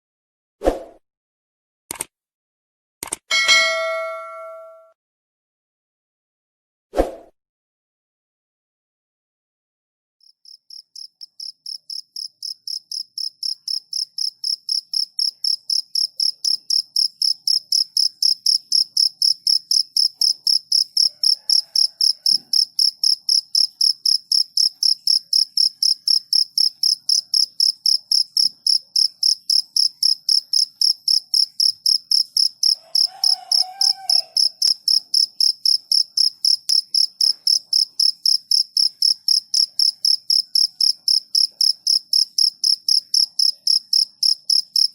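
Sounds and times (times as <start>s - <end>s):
cricket chirping: 10.2s - 44.9s.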